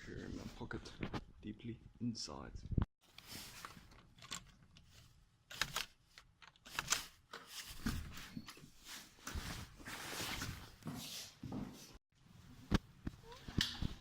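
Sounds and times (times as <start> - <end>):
handling rustling: 3.0 - 10.9.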